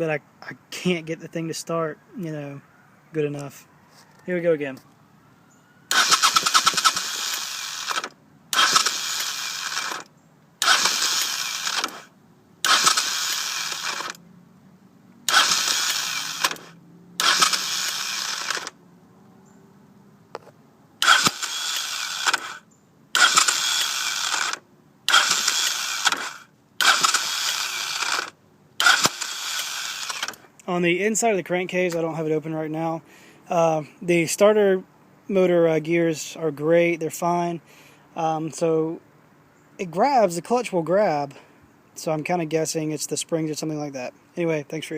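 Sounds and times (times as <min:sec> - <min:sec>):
electric starter grinding whirr: 0:05.9 - 0:14.3, 0:15.2 - 0:18.8, 0:21.0 - 0:30.5.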